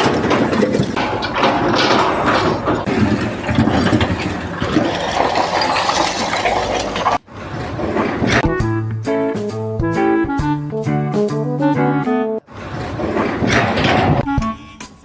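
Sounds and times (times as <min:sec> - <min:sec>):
mechanical clatter: 0:00.0 - 0:08.5, 0:12.5 - 0:14.4.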